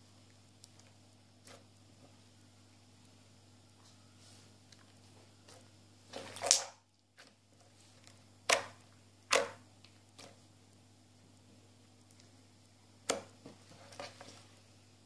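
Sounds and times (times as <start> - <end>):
low steady hum: 0.0 - 15.0
slime squelching: 5.5 - 10.4.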